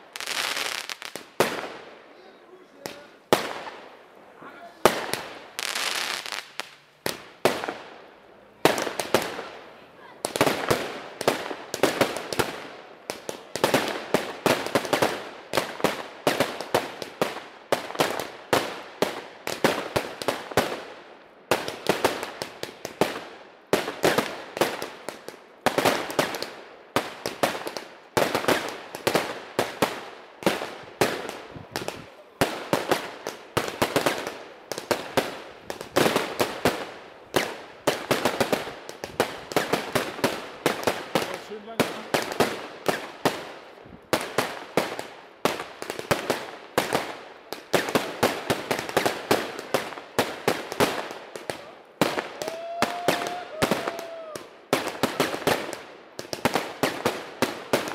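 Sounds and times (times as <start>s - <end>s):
firework cracks and crackling: 0.0s - 57.9s.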